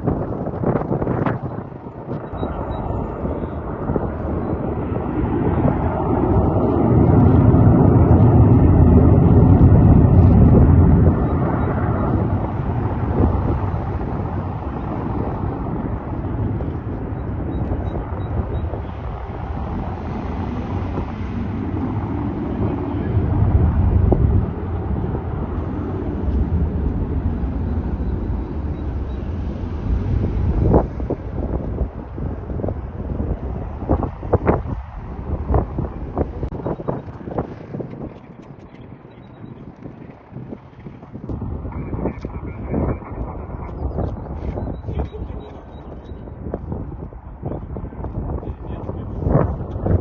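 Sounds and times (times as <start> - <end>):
jet engine roar: 0.0 - 50.0
wind buffeting microphone: 0.0 - 50.0.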